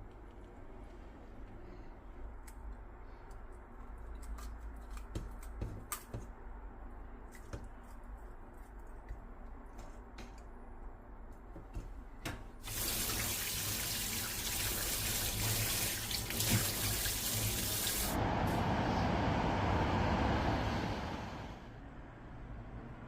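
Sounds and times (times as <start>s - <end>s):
tap water running into sink: 12.6s - 18.2s.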